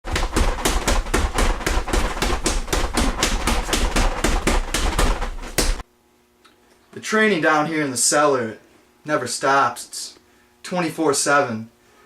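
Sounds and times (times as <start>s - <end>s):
rapid hard hits: 0.0s - 5.8s.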